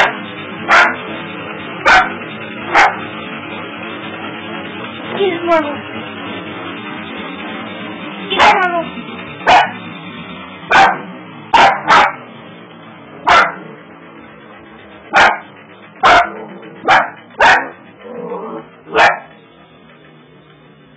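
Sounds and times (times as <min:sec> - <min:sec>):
dog barking: 0:00.0 - 0:01.0, 0:01.8 - 0:03.0, 0:08.4 - 0:08.8, 0:09.5 - 0:09.8, 0:10.7 - 0:12.2, 0:13.3 - 0:13.7, 0:15.2 - 0:17.8, 0:18.9 - 0:19.3.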